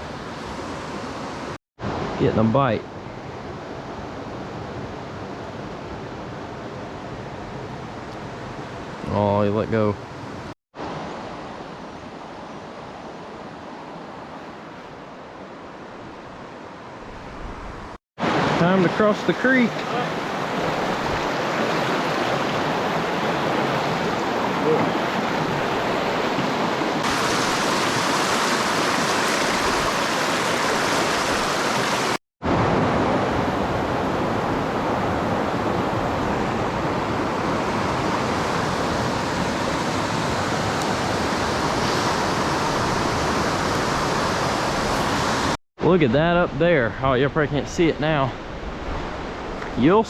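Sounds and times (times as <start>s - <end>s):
rushing creek water: 18.2s - 45.6s.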